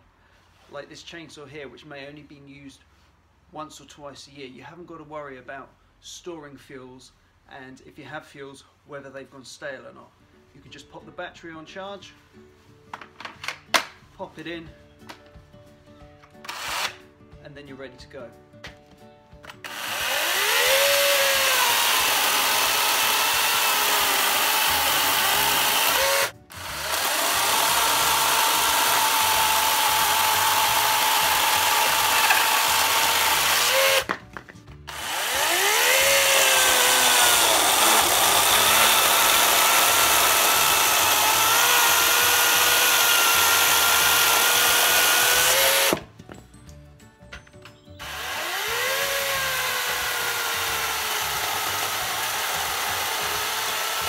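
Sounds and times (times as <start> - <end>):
battery chainsaw cutting wood: 16.5 - 17.0, 19.5 - 34.2, 34.9 - 46.1, 48.0 - 54.0.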